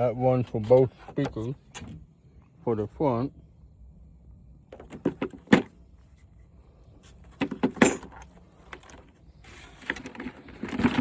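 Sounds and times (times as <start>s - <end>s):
plastic parts clicking and rattling: 7.3s - 11.0s.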